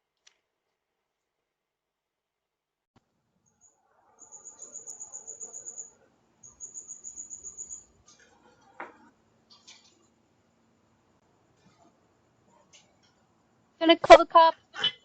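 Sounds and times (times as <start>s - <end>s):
high-pitched insect trills: 3.5s - 8.0s.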